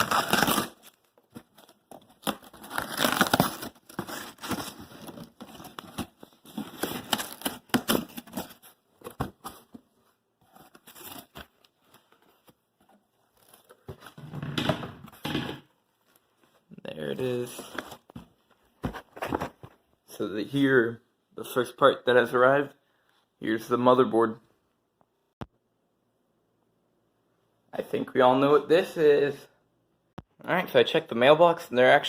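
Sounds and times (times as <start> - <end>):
cardboard tearing and crinkling: 0.0 - 9.7, 10.4 - 12.1.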